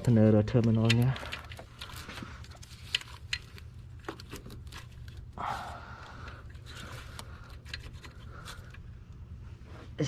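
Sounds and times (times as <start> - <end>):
clicks and knocks of tools: 0.0 - 4.8
steady low hum: 0.0 - 10.0.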